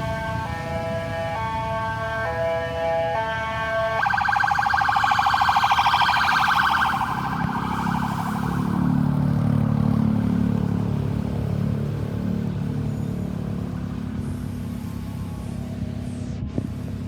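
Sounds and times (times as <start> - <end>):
ambulance siren wailing: 0.0 - 15.9
vehicle engine running: 0.0 - 17.0.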